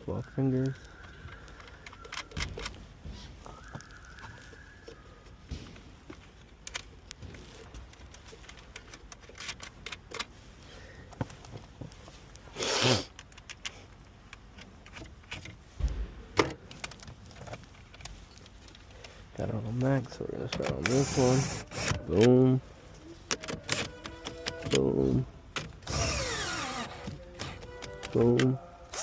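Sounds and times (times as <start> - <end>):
tools clicking on metal and plastic: 0.6 - 2.8, 6.0 - 10.3, 16.7 - 22.4, 23.3 - 29.0
dull thump: 15.7 - 16.6.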